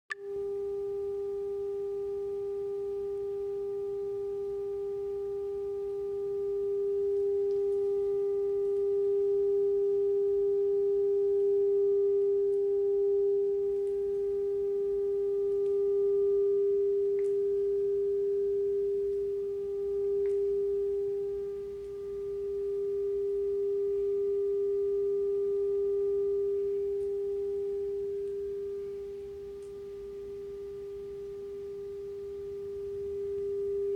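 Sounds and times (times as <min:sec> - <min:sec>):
steady test tone hum: 0:00.1 - 0:33.9.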